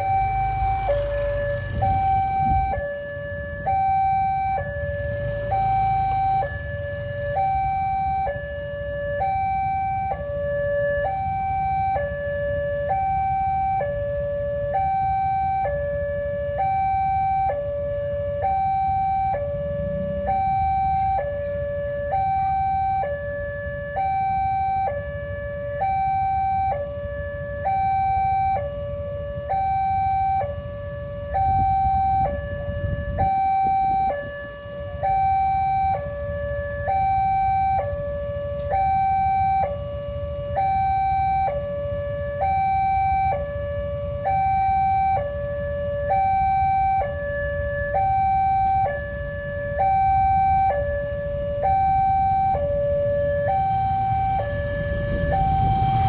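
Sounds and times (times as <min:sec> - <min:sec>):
two-tone crossing alarm: 0:00.0 - 0:56.0
low rumble: 0:50.9 - 0:56.0.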